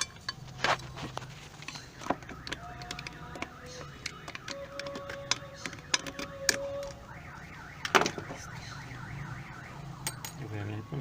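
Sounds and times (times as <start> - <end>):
hand tools clicking on metal: 0.0 - 7.0
warbling siren-like wail: 1.8 - 11.0.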